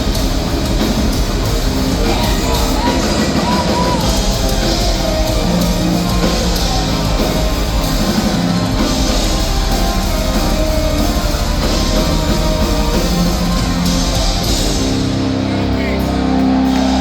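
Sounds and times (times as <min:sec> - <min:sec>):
distorted electric guitars: 0:00.0 - 0:17.0
drum kit: 0:00.0 - 0:17.0
heavy metal band playing: 0:00.0 - 0:17.0.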